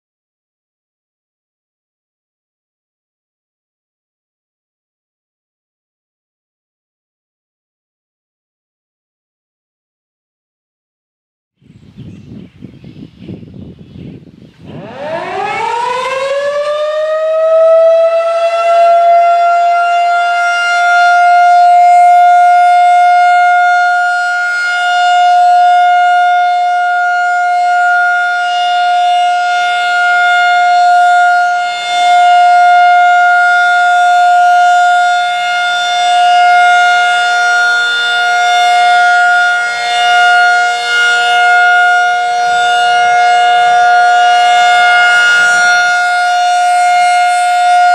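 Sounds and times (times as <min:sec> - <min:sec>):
warning siren winding up: 0:14.6 - 0:47.9.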